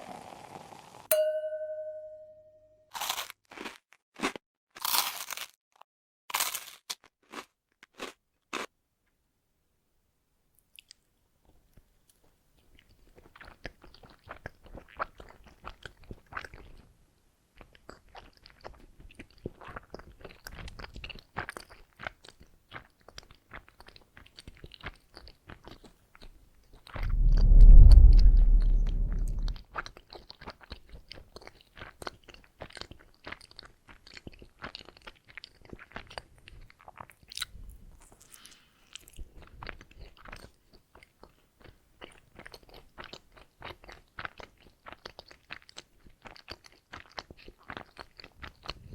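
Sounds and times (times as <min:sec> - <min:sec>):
low-pitched swell: 0:27.0 - 0:29.6
person chewing donuts: 0:36.9 - 0:41.4, 0:42.0 - 0:48.9.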